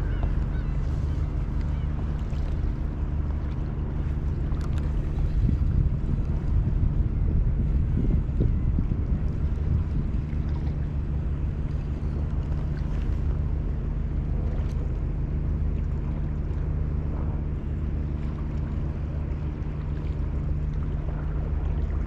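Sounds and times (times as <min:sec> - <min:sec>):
engine running steadily: 0:00.0 - 0:22.0
water noise: 0:00.0 - 0:22.0
wind: 0:00.0 - 0:22.0.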